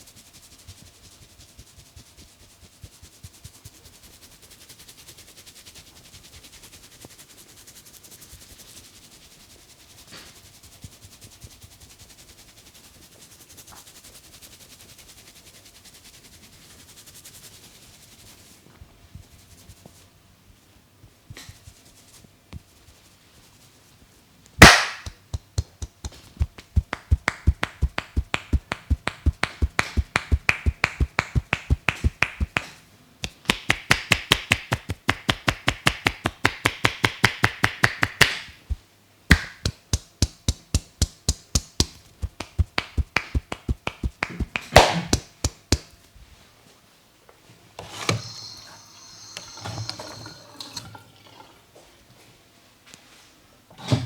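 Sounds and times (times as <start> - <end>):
loud slap: 24.6 - 45.9
hands tapping on head: 24.6 - 46.0
hands rubbing hair: 24.6 - 46.1.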